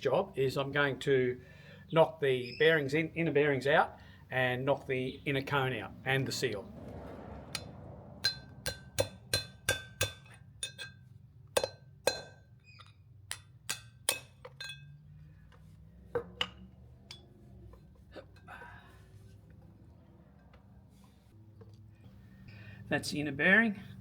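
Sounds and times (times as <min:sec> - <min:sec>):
hammer striking metal: 0:07.6 - 0:11.0, 0:11.6 - 0:12.4.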